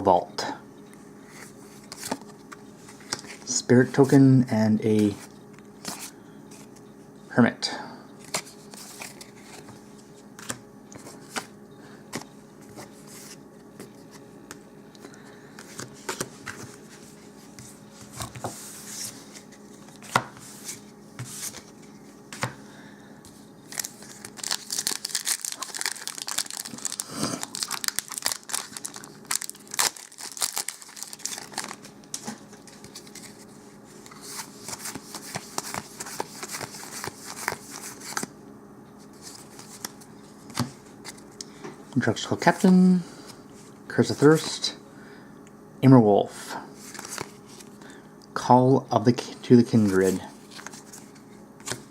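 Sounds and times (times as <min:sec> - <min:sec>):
foil wrapper tearing and crinkling: 0:23.7 - 0:31.9.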